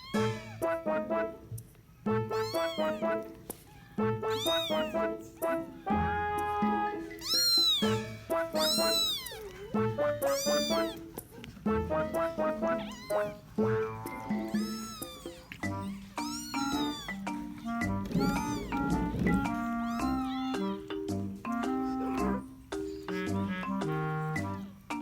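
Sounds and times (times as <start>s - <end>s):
cat meowing: 0.0s - 0.7s, 2.3s - 6.0s, 7.0s - 11.2s, 12.0s - 20.9s
bouncy music track: 0.0s - 25.0s.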